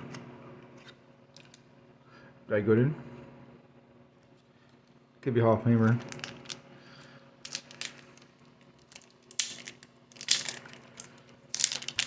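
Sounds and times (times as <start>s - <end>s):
wrapper crinkling and tearing: 6.0s - 6.6s, 7.4s - 12.0s.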